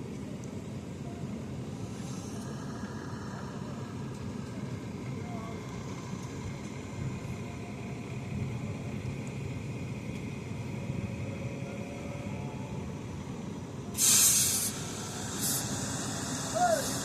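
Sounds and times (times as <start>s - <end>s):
machinery engine rumbling: 0.0s - 17.0s
loud short hiss: 14.0s - 17.0s.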